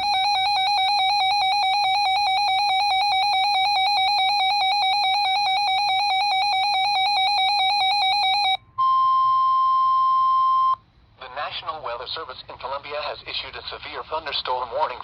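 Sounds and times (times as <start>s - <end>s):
harsh electronic alarm tone: 0.0s - 9.5s.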